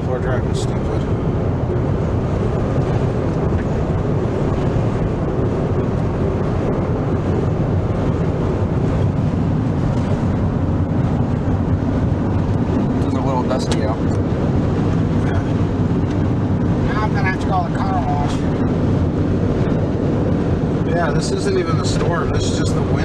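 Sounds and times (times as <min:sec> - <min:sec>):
strong wind buffeting a car: 0:00.0 - 0:23.0.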